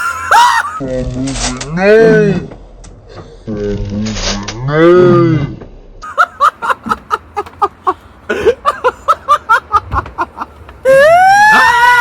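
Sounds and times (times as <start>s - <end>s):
person laughing hard: 0.0s - 0.8s, 6.0s - 12.0s.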